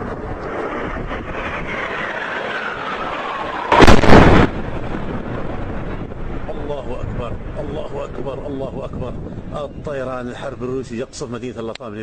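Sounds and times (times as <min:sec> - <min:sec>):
falling whine: 0:00.0 - 0:08.2
wind noise: 0:00.0 - 0:11.4
loud bomb explosion: 0:00.1 - 0:08.2.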